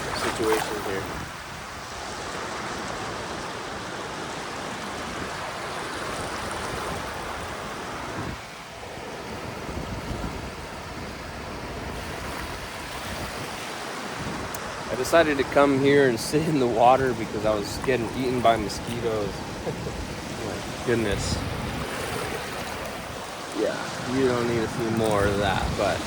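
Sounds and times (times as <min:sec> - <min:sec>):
surf washing: 0:00.0 - 0:26.0.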